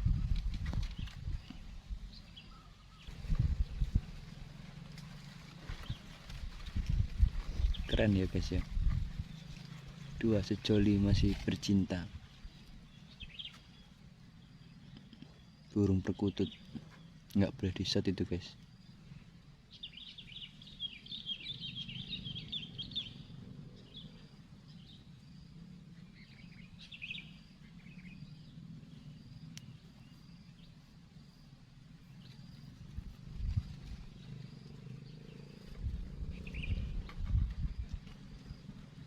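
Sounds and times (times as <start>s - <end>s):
wind rumbling on microphone: 0.0s - 13.5s, 32.1s - 39.0s
small birds chirping: 0.0s - 39.0s.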